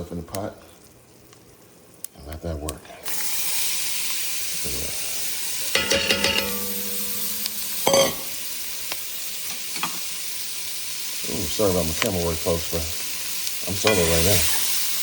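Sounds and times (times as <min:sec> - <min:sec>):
vegetables sizzling in a pot: 0:00.0 - 0:15.0
utensil clattering against pot: 0:05.7 - 0:08.3.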